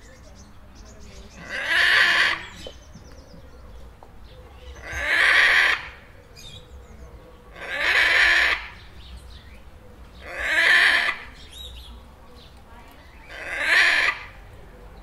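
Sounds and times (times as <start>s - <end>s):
parrot chatter: 0.8s - 6.7s, 7.4s - 9.1s, 10.2s - 15.0s
parrot screeching: 4.8s - 5.9s, 7.6s - 8.7s, 10.2s - 11.3s, 13.3s - 14.4s.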